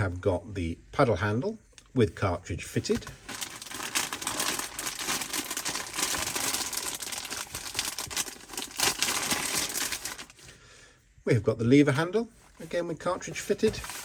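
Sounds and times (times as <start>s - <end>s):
packaging crinkling: 2.9s - 10.4s, 13.4s - 14.0s.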